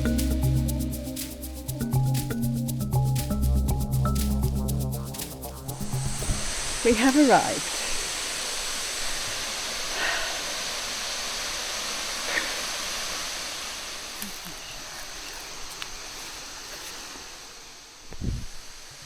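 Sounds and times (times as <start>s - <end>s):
waterfall rushing: 4.8s - 18.0s.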